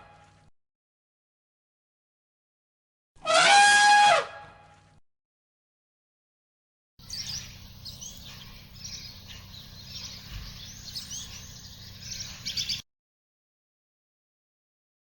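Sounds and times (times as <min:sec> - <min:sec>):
small birds chirping: 0:07.0 - 0:12.8
steady low hum: 0:07.0 - 0:12.8.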